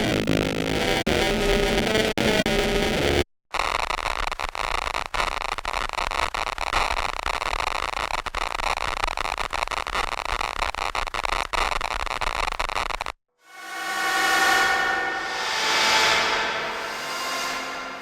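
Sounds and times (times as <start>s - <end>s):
harsh synthesizer noise texture: 13.4s - 18.0s
high whistling tone: 13.4s - 18.0s.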